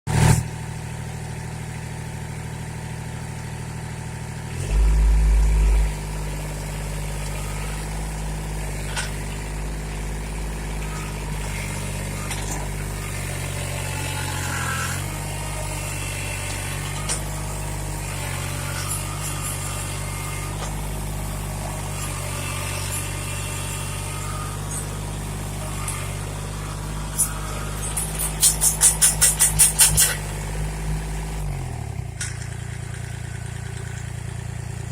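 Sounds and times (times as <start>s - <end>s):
tractor diesel engine running: 0.5s - 34.9s
loud low rumble: 4.5s - 6.7s.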